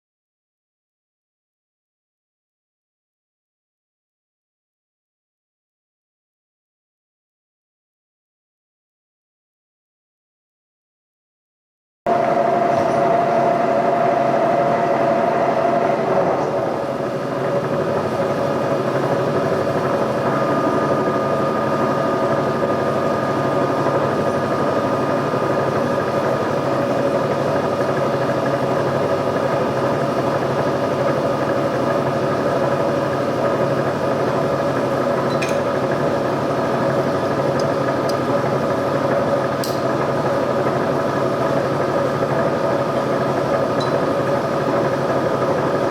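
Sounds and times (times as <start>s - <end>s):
milling machine hum: 12.1s - 45.9s
spindle drive whine: 12.1s - 45.9s.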